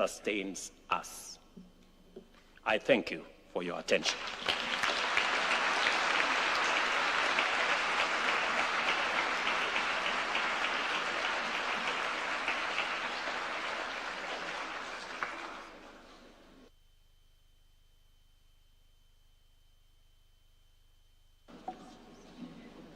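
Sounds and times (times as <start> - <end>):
audience applauding: 3.9 - 16.3.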